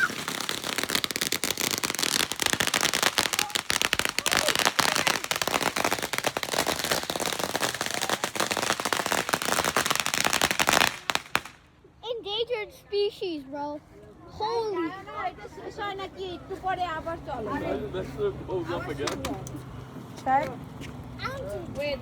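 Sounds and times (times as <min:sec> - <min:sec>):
firecrackers popping: 0:00.0 - 0:11.8.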